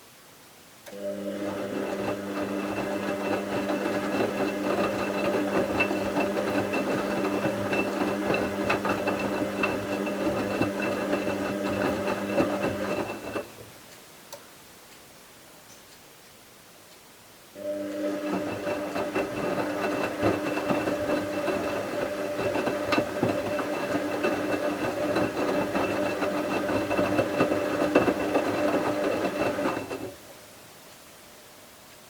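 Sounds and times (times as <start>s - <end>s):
washing machine motor humming: 0.9s - 13.5s, 17.6s - 30.2s.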